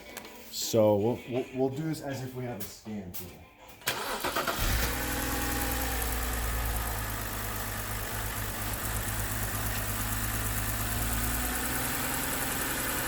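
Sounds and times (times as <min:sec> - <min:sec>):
car engine idling rough: 0:04.6 - 0:13.0.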